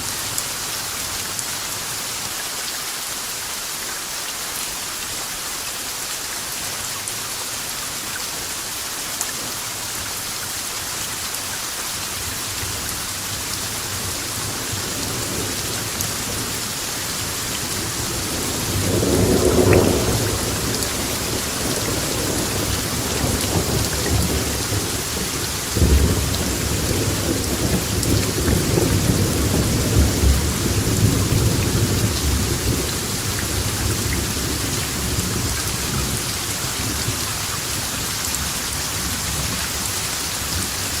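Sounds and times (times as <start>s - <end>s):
rain hissing: 0.0s - 41.0s
thunder rumbling: 14.0s - 36.3s.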